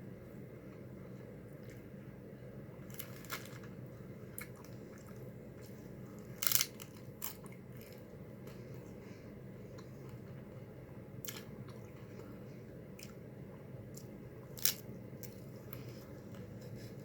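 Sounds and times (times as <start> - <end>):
steady low hum: 0.0 - 17.0
taco shells crunching: 2.8 - 8.6, 14.0 - 16.0.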